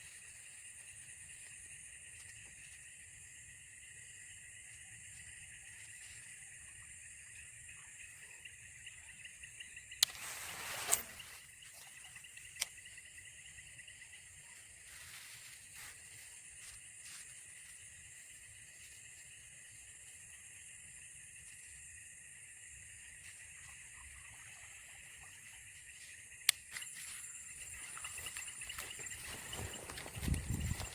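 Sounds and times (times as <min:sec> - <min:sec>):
insects chirping: 0:00.0 - 0:30.9
rustle with sharp clicks: 0:09.9 - 0:13.2.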